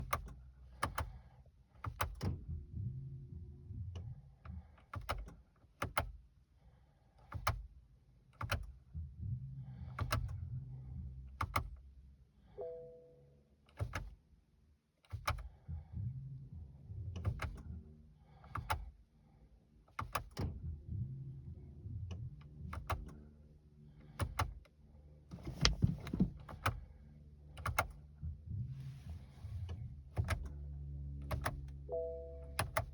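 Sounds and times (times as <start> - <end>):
car control clicks and knocks: 0.0 - 1.2, 1.8 - 2.5, 4.5 - 6.2, 7.2 - 8.8, 9.9 - 10.4, 11.3 - 11.9, 13.7 - 14.2, 15.0 - 15.6, 17.1 - 17.7, 18.4 - 19.0, 19.9 - 20.6, 22.4 - 23.2, 24.1 - 24.7, 25.3 - 26.8, 27.6 - 28.1, 29.5 - 30.6, 31.2 - 31.8, 32.6 - 32.9
low intermittent rumble: 0.0 - 7.1, 7.7 - 32.9.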